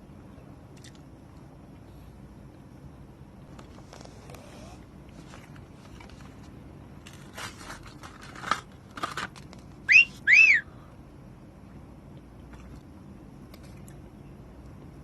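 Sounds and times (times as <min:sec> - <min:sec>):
crinkling rustling: 0:05.1 - 0:09.8
whistled notes: 0:09.9 - 0:10.7.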